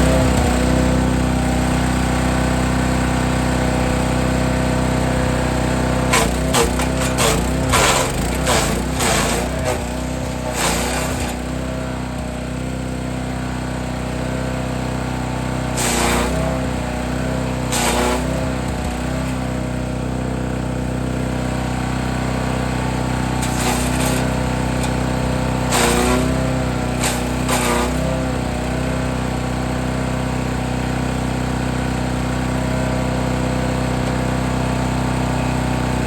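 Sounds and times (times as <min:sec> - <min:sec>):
wood chipper engine running: 0:00.0 - 0:36.0
branches being chipped: 0:06.1 - 0:11.9, 0:15.7 - 0:19.5, 0:23.3 - 0:28.3.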